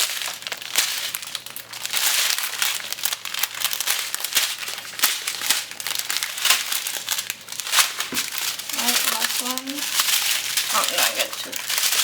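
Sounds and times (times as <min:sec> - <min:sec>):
plastic bags crinkling: 0:00.0 - 0:12.0.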